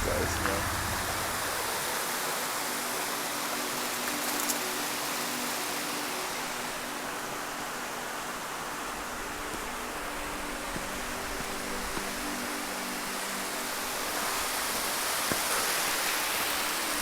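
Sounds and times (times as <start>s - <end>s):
faint low hum: 0.0s - 1.9s
waterfall rushing: 0.0s - 17.0s.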